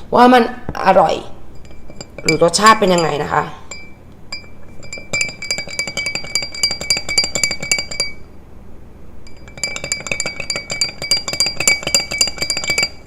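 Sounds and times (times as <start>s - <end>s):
metal spoon clinking in glass: 1.6s - 8.2s, 9.2s - 13.0s.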